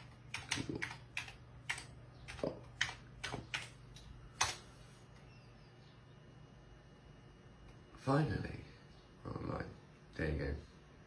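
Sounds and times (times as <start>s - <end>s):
keyboard keystrokes: 0.0s - 4.6s
faint low hum: 0.0s - 11.0s.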